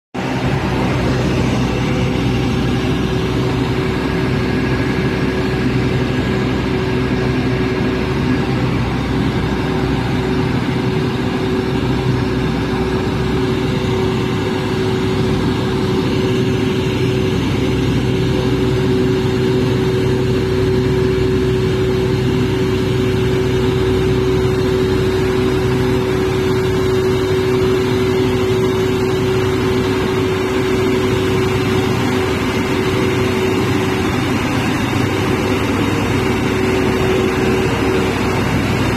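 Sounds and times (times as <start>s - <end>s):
diesel generator running: 0.2s - 38.9s.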